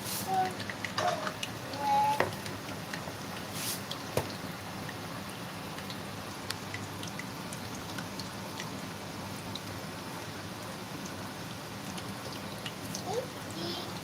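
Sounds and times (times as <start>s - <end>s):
dough deep-frying in oil: 0.0s - 14.0s
oil popping and crackling: 0.0s - 14.0s.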